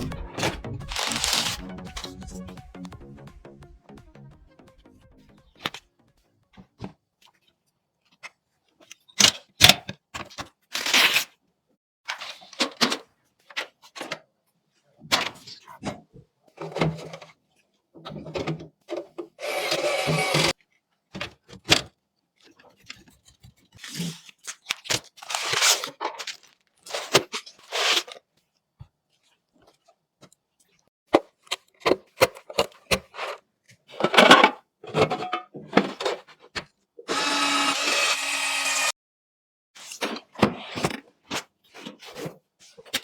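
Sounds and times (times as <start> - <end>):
whirring: 19.4 - 20.5, 37.1 - 39.0.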